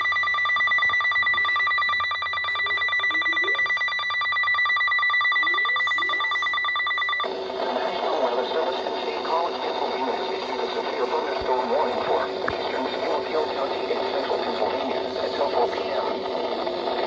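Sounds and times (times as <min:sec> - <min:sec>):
high-pitched alarm tone: 0:00.0 - 0:17.0
broadcast voice message: 0:07.2 - 0:17.0.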